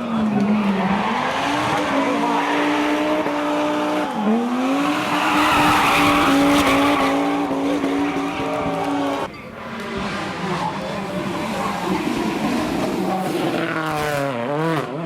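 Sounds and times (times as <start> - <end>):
rally car engine revving: 0.0 - 15.0
tyre noise: 2.7 - 14.4.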